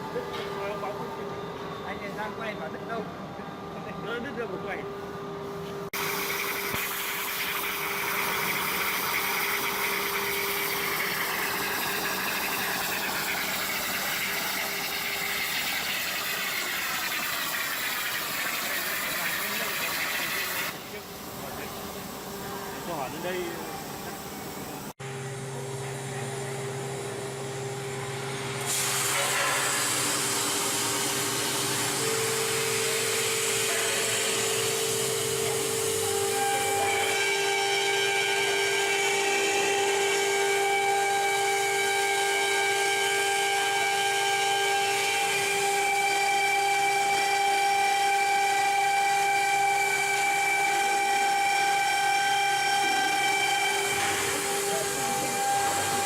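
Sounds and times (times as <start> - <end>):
plasma cutter hissing: 6.0 - 24.9, 28.6 - 32.0.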